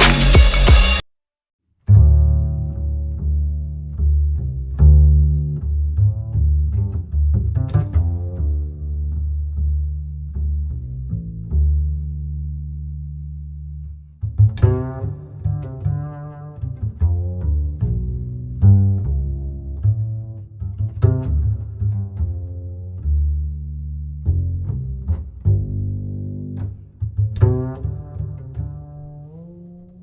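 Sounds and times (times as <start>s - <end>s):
low held bass notes: 0.0s - 1.0s, 1.9s - 30.0s
sharply struck pitched notes: 0.0s - 1.0s.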